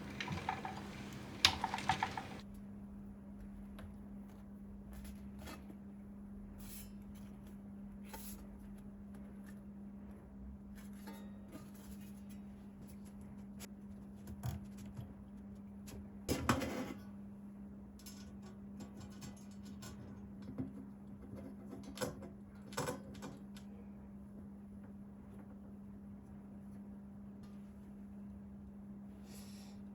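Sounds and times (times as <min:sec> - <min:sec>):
computer parts clicking and knocking: 0:00.0 - 0:02.4
scraping rustle: 0:00.0 - 0:02.4.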